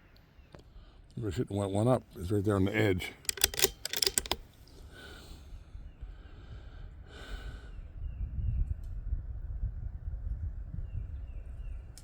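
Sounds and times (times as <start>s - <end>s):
sharp clicks: 3.2s - 4.5s.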